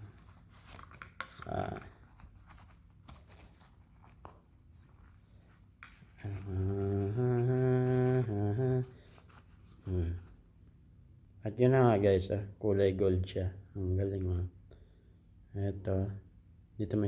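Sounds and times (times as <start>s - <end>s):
plastic case clicks and handling: 0.6s - 1.8s
man humming low note: 6.2s - 8.9s.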